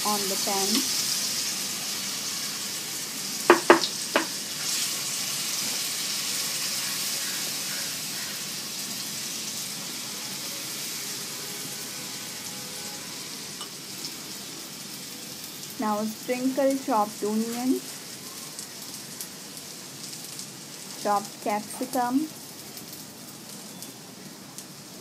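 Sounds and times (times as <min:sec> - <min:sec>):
batter sizzling on a pan: 0:00.0 - 0:25.0
sharp knocks: 0:03.5 - 0:04.3.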